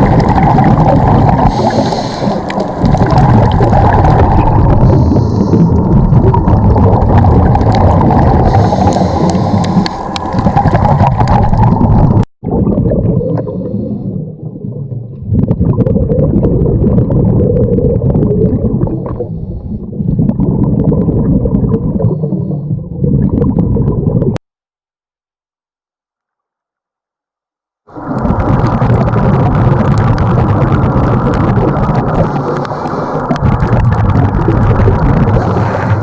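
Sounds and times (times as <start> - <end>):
gurgling exhaust bubbles: 0.0 - 24.4, 27.9 - 36.0
scuba regulator breathing: 1.3 - 6.0, 8.2 - 10.6, 13.4 - 14.3, 19.0 - 19.9, 32.0 - 33.6, 35.1 - 36.0.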